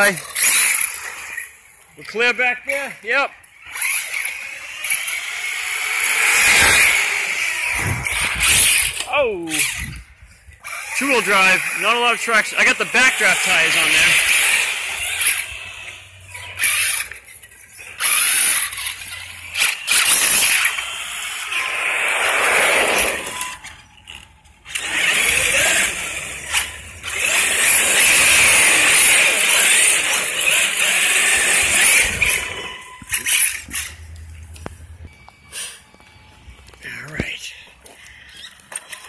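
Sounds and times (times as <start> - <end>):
electric motors revving with whine: 0.0 - 1.8, 3.4 - 36.8
tires spinning on wet pavement: 18.0 - 23.6.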